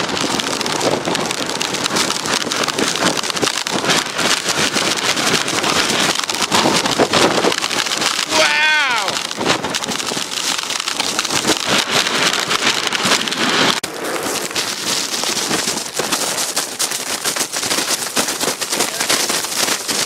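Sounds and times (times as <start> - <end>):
blizzard wind buffeting microphone: 0.0 - 20.0
snow pelting: 0.0 - 20.0.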